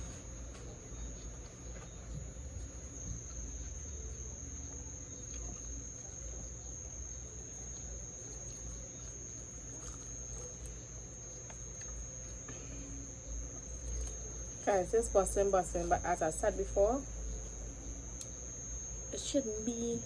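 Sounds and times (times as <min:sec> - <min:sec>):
crickets chirring: 0:00.0 - 0:20.0.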